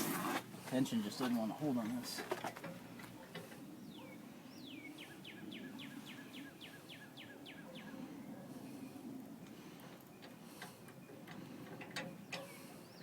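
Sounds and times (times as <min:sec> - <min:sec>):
songbird singing: 0:02.7 - 0:13.0.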